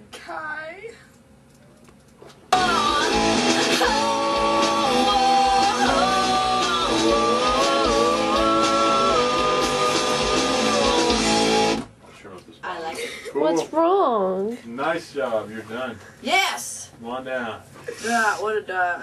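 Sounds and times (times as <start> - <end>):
rock song with vocals and guitar: 2.6 - 11.9.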